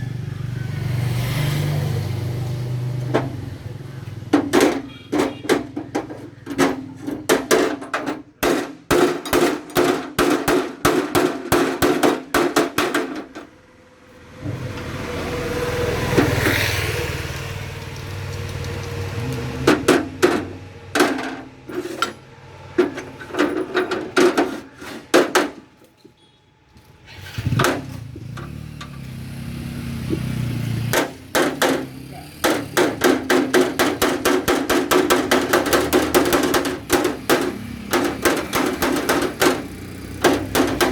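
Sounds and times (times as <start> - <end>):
hammer beating sheet metal: 4.3 - 13.6, 19.7 - 22.2, 22.8 - 25.7, 30.9 - 40.9.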